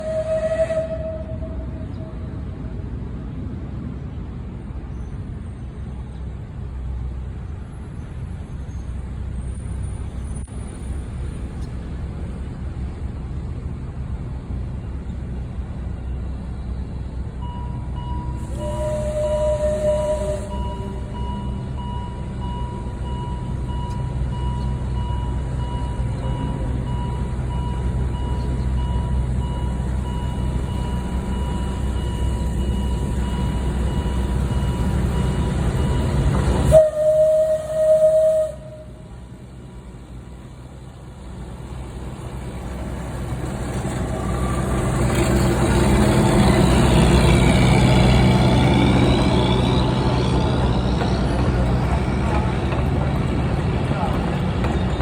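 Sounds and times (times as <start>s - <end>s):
train whistle toot: 0.0s - 2.3s, 18.3s - 21.4s, 36.6s - 39.2s
locomotive rumble: 0.0s - 55.0s.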